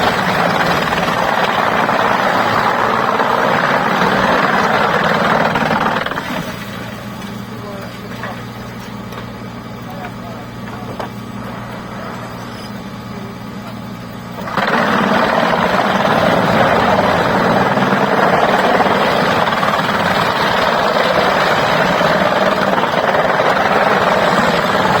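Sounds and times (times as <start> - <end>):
machinery engine hum: 0.0 - 25.0
loud steady rushing noise: 14.4 - 25.0.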